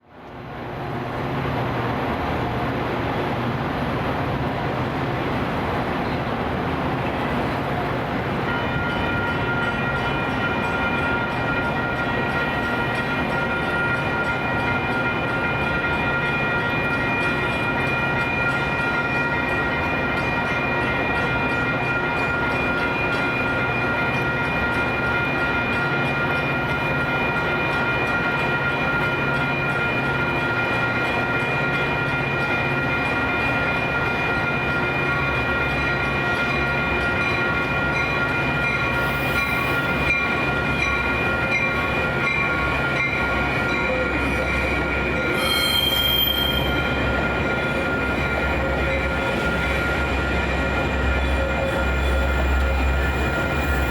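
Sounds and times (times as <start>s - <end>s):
train passing on rails: 0.0s - 53.9s
crossing warning bells ringing: 0.6s - 53.9s.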